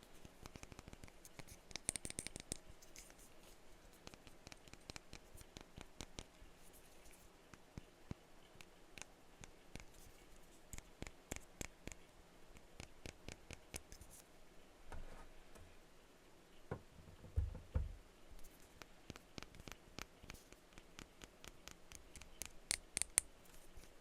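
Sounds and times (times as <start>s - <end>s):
dull heavy knocks: 16.7s - 18.0s.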